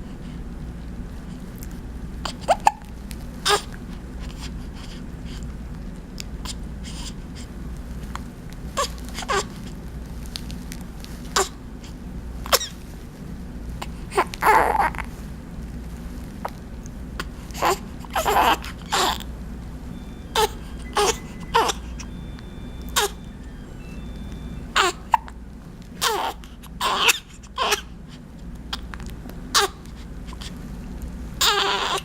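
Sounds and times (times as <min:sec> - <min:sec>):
baby hiccupping: 0:17.6 - 0:19.3, 0:26.0 - 0:27.9, 0:31.4 - 0:32.0.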